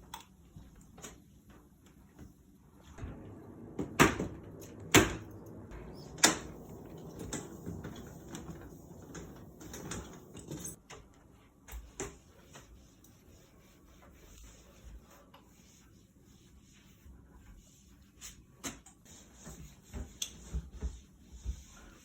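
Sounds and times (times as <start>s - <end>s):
sharp bangs: 3.0s - 7.7s.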